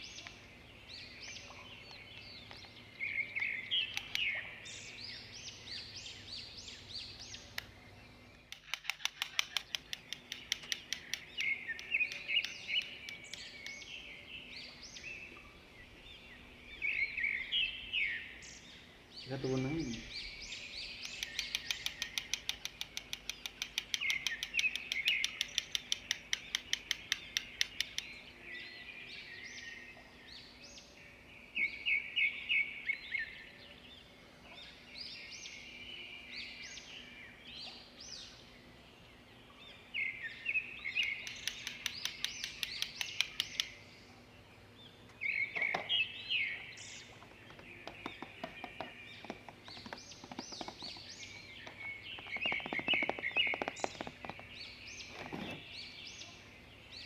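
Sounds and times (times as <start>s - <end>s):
birds chirping: 0.0s - 57.0s
rapid bird trilling: 47.2s - 55.7s.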